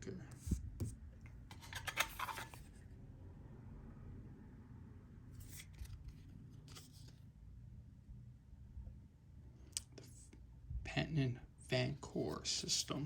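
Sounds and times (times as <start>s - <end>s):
low room hum: 0.0s - 13.0s
paper and packaging rustling: 1.5s - 2.7s.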